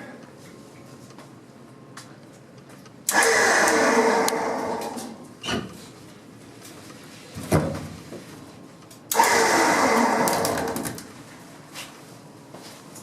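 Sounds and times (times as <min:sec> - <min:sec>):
hydraulic lift rushing: 0:03.1 - 0:05.2, 0:09.1 - 0:11.0.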